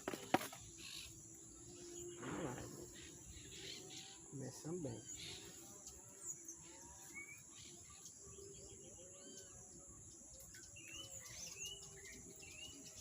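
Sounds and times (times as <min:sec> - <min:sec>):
bird chirping and trilling: 0:00.6 - 0:13.0.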